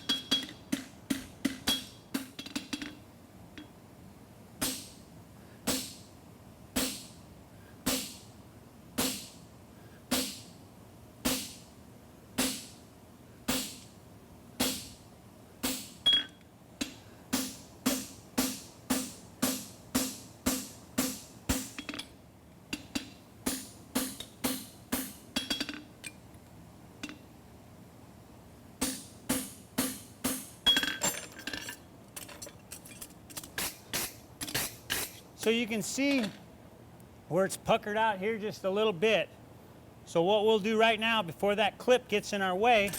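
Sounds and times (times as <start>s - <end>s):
hammer striking metal on anvil: 0.0s - 3.0s, 22.8s - 25.9s.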